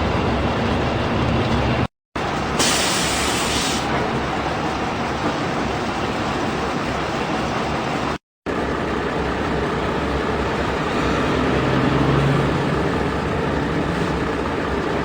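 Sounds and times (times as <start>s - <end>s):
engine running: 3.9s - 15.0s.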